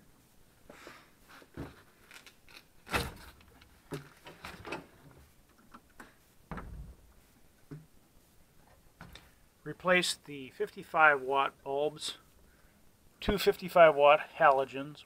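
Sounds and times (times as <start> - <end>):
clicks knocks and creaks: 2.1 - 7.0
heavy thumps: 6.4 - 8.0.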